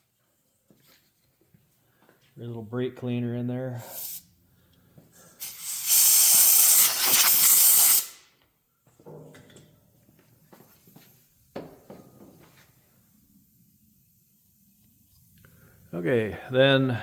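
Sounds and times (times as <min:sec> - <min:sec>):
aerosol can spraying hiss: 0:03.8 - 0:04.2, 0:05.4 - 0:08.2.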